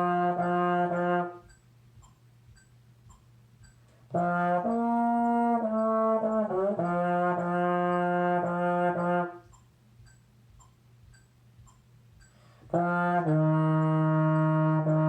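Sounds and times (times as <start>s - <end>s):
trombone playing long notes: 0.0s - 1.5s, 4.1s - 9.4s, 12.7s - 15.0s
faint metronome ticking: 0.0s - 15.0s.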